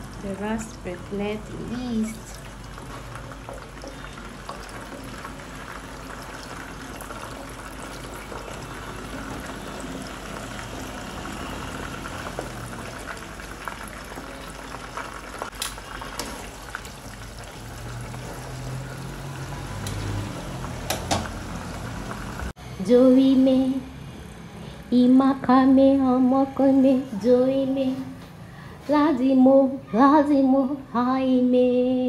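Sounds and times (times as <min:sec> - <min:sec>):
food deep-frying in oil: 0:00.0 - 0:22.5.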